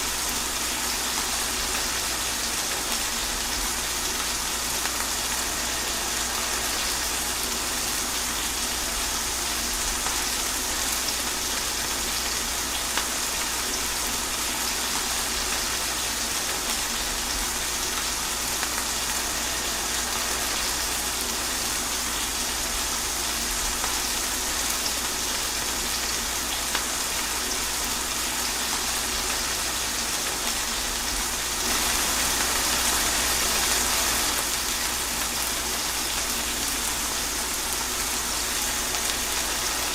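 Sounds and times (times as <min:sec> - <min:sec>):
rain falling through trees: 0:00.0 - 0:39.9
water running: 0:01.0 - 0:35.1.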